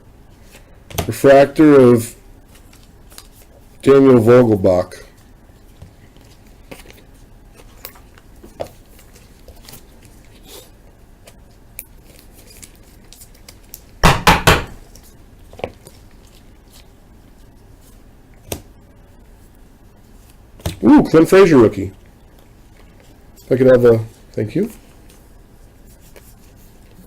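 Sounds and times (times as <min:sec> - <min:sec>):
cards and plastic packaging handled: 0:02.4 - 0:03.7, 0:05.2 - 0:14.0, 0:14.9 - 0:18.1.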